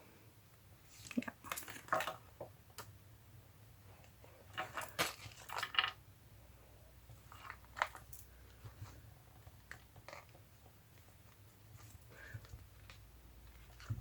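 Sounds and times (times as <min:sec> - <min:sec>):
paper rustling and crinkling: 0:04.4 - 0:06.0, 0:07.2 - 0:14.0.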